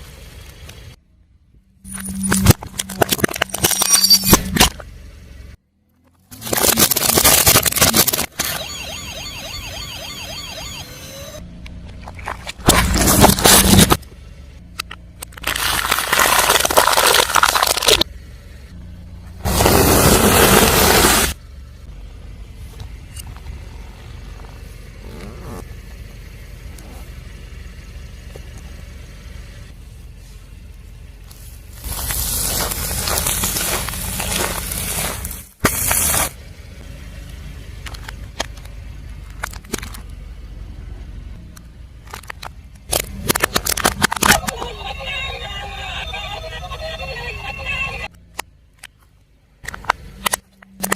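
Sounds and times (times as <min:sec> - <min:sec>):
low rumble of car: 0:00.0 - 0:50.9
tyre crushing objects: 0:12.5 - 0:14.0, 0:15.4 - 0:18.0, 0:31.8 - 0:36.4
sharp cracks and snaps: 0:14.8 - 0:18.1, 0:41.5 - 0:44.5.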